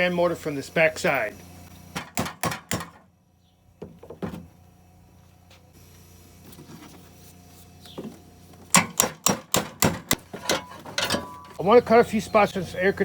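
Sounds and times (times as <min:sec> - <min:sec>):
hand tools clicking and knocking: 0:08.7 - 0:11.6.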